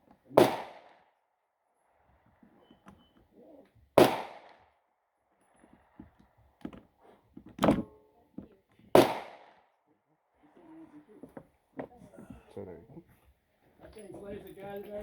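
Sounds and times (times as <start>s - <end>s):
gunshots with echo: 0.3s - 1.0s, 4.0s - 4.6s, 9.0s - 9.6s.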